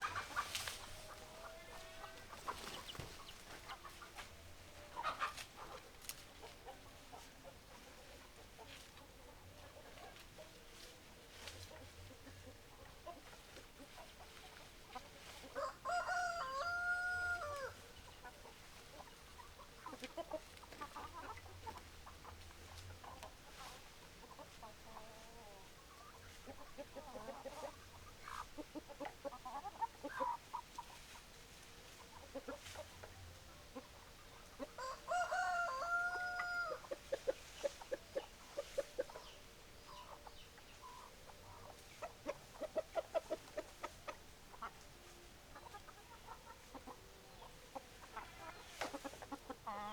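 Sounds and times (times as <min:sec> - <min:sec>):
hens clucking: 0:00.0 - 0:49.9
rooster crowing: 0:15.6 - 0:17.8, 0:34.8 - 0:36.8.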